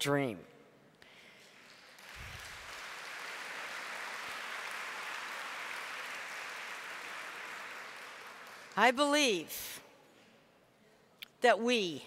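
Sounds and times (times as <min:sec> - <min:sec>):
audience applauding: 0:01.4 - 0:09.4.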